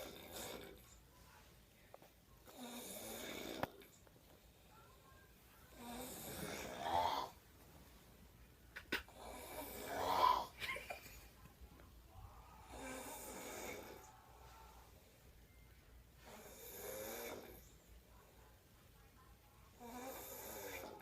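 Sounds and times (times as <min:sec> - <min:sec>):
person snoring: 0:00.0 - 0:00.8, 0:02.5 - 0:03.8, 0:05.7 - 0:07.4, 0:09.1 - 0:10.6, 0:12.6 - 0:14.8, 0:16.2 - 0:17.7, 0:19.8 - 0:21.0.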